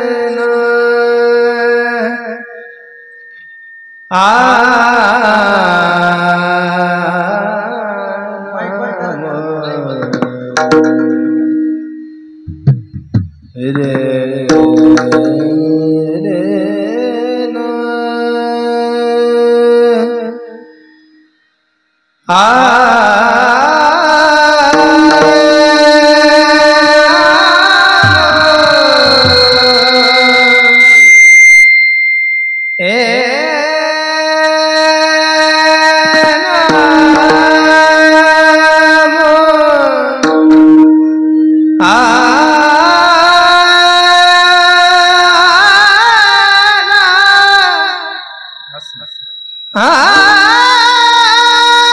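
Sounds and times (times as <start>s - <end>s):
high voice singing: 0.0s - 3.5s, 4.1s - 11.3s, 12.5s - 20.8s, 22.3s - 31.1s, 32.8s - 51.9s
voice holding long high note: 0.0s - 10.6s, 22.3s - 31.8s
instrumental drone: 0.0s - 21.6s, 22.2s - 51.9s
sharp percussion strikes: 8.6s - 16.4s, 24.6s - 44.8s, 48.0s - 51.9s
tabla strokes: 8.6s - 16.8s, 23.3s - 45.9s.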